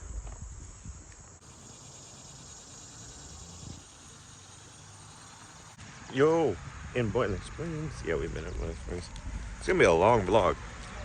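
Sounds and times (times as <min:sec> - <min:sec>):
high-pitched insect drone: 0:00.0 - 0:05.8
faint outdoor ambience: 0:00.0 - 0:11.0.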